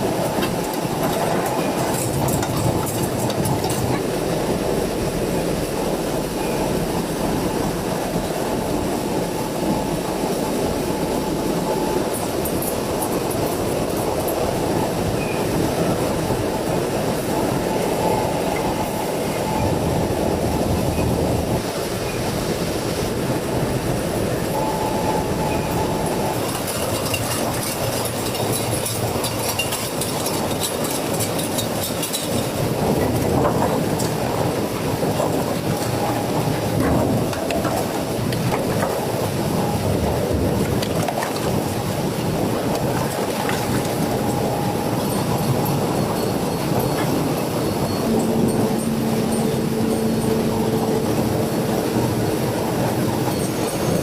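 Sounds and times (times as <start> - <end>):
machinery rattling clatter: 0.0 - 9.0, 23.4 - 54.0.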